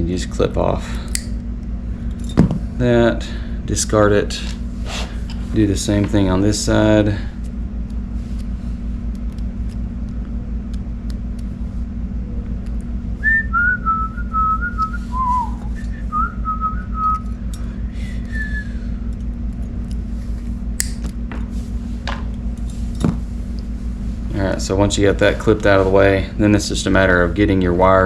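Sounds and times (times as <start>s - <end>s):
low hum: 0.0s - 28.0s
person whistling a tune: 13.2s - 17.3s, 18.0s - 18.8s.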